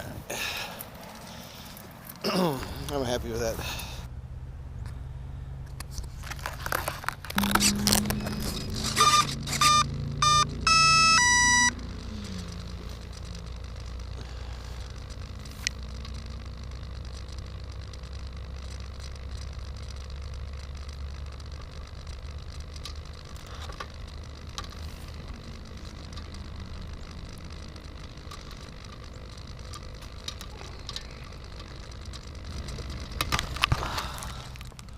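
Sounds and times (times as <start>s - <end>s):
steady low hum: 0.0s - 34.9s
short electronic beeps: 7.4s - 11.8s
two-tone beep: 7.4s - 11.8s.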